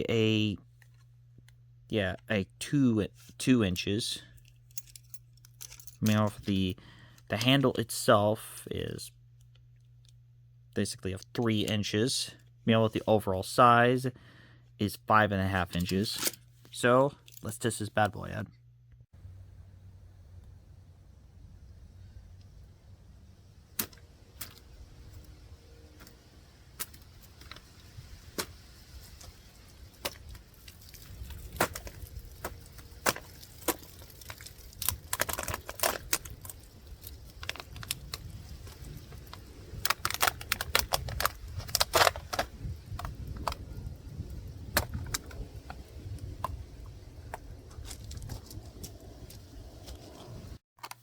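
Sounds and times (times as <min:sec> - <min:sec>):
low background rumble: 0:16.4 - 0:50.6.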